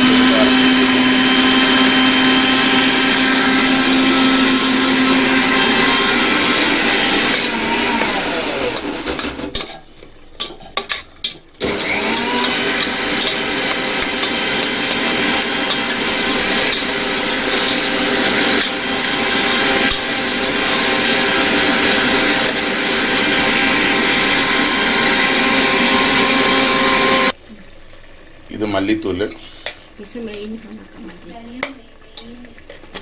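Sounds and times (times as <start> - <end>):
electric mixer grinder running: 0.0 - 9.6, 11.6 - 27.4.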